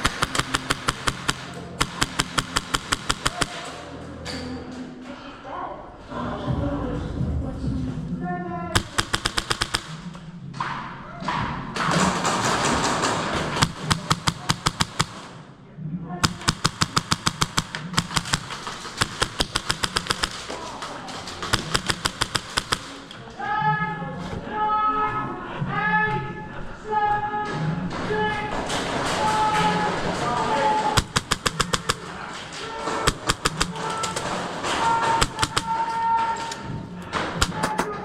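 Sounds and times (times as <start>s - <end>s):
airsoft guns firing bursts: 0.0s - 4.0s, 8.8s - 10.3s, 11.8s - 15.5s, 16.2s - 23.2s, 28.6s - 38.0s
voices: 0.0s - 38.0s.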